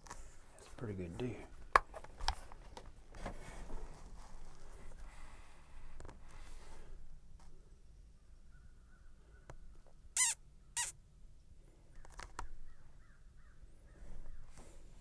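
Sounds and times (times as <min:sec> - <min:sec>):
distant bird sounds: 0:08.2 - 0:09.6
bird harsh calls: 0:10.2 - 0:10.9.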